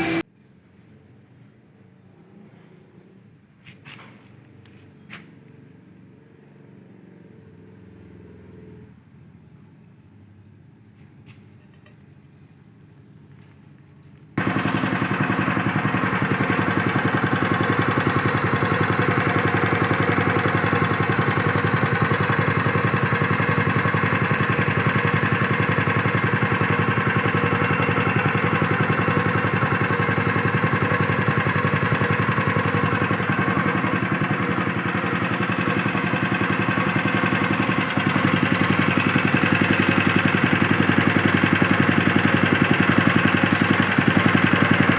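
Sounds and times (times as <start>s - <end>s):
engine running fast: 0.0s - 0.2s, 14.4s - 44.9s.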